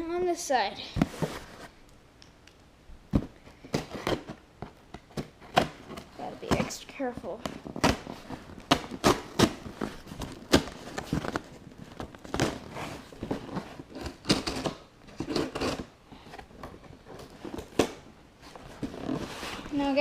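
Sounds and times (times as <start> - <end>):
packaging rustling and tearing: 7.5 - 15.9.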